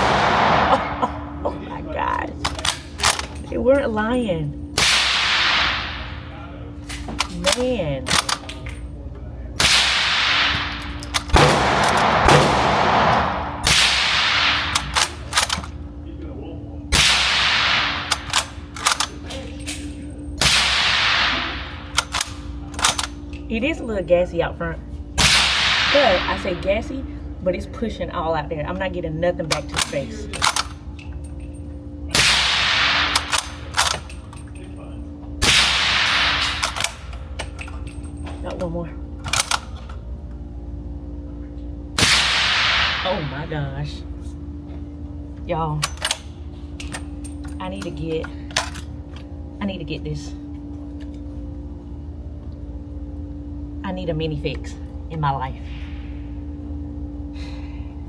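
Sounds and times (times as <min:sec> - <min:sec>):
suppressed rifle shots: 0:00.0 - 0:01.4, 0:04.8 - 0:06.2, 0:09.6 - 0:15.7, 0:32.1 - 0:34.1, 0:35.4 - 0:37.0, 0:42.0 - 0:43.4.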